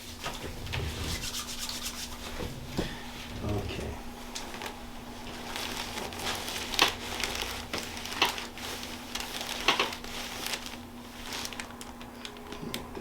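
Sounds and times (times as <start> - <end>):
hands rustling and crinkling: 4.2 - 12.9.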